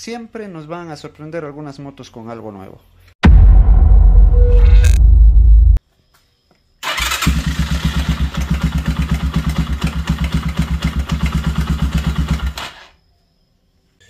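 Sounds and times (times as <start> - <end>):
motorcycle engine starting and running: 6.8 - 12.8.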